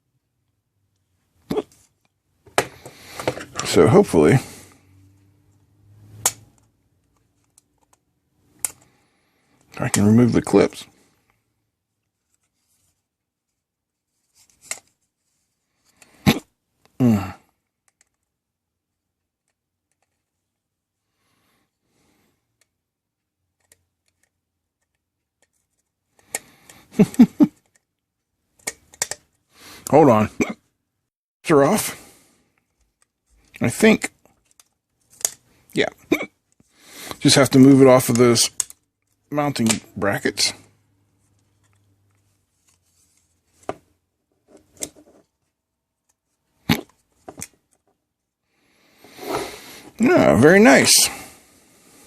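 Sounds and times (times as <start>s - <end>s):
person vocal sounds: 1.5s - 1.7s, 16.3s - 17.5s
plastic parts clicking and knocking: 2.4s - 3.7s, 6.2s - 8.9s, 17.8s - 18.3s, 19.4s - 20.4s, 23.5s - 29.4s, 32.7s - 35.5s, 38.0s - 39.9s.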